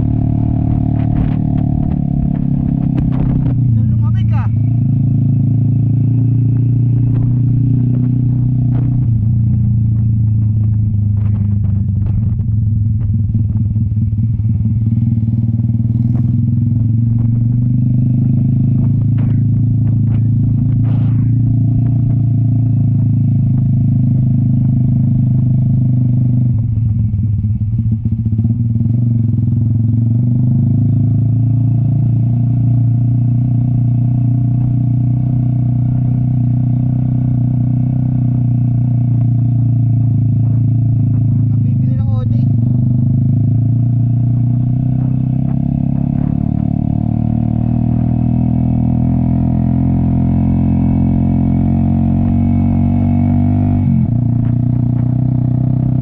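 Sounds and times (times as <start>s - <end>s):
motorcycle engine under load: 0.0s - 56.0s.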